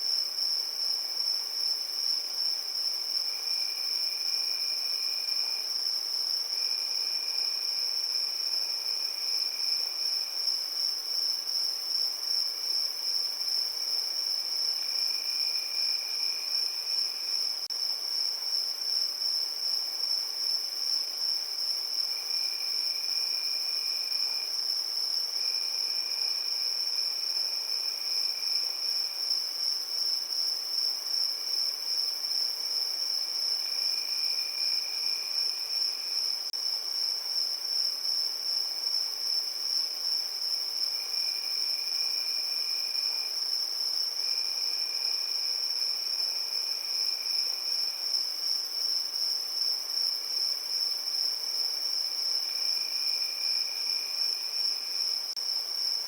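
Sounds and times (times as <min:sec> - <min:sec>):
lower cricket trill: 0:00.0 - 0:56.0.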